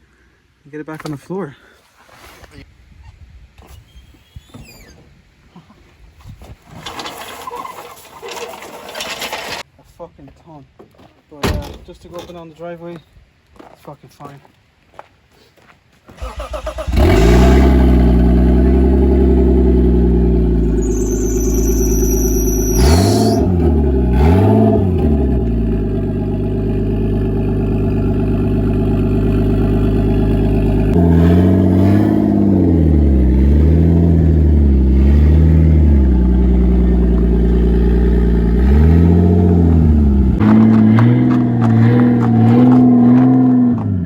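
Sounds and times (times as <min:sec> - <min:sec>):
car engine starting and revving: 0:16.2 - 0:44.0
high-pitched squeal: 0:20.6 - 0:23.7.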